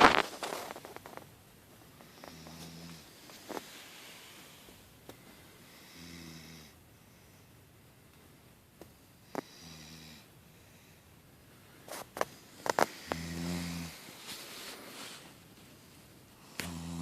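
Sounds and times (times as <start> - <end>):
woman snoring: 5.8 - 6.8, 9.3 - 10.3, 12.8 - 14.0, 16.5 - 17.0.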